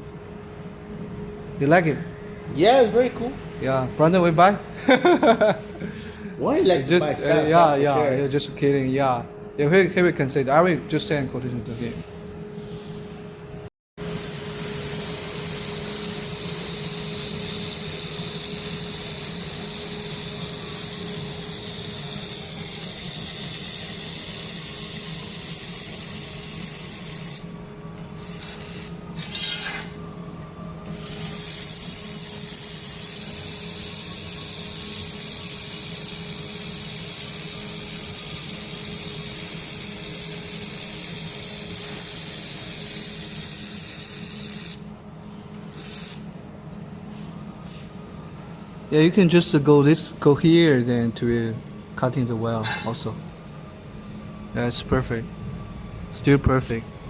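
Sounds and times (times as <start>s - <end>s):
machine hum: 0.0s - 12.6s, 13.3s - 42.6s, 44.3s - 57.0s
laser welder hissing sizzle: 14.0s - 30.1s, 30.8s - 45.0s, 45.6s - 46.4s.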